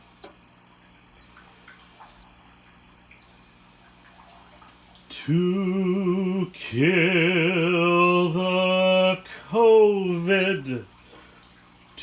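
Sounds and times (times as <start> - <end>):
appliance beeper long beeps: 0.2 - 1.4, 2.2 - 3.4
man singing: 5.1 - 10.9.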